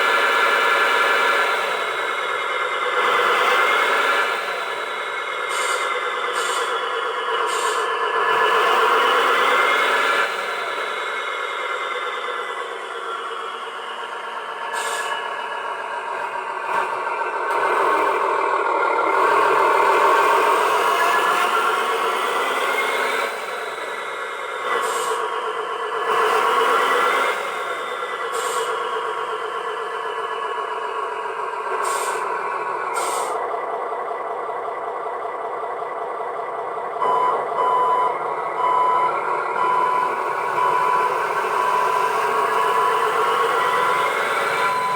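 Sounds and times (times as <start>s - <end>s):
model truck motor drone: 0.0s - 44.9s
reversing beeper: 37.0s - 44.9s.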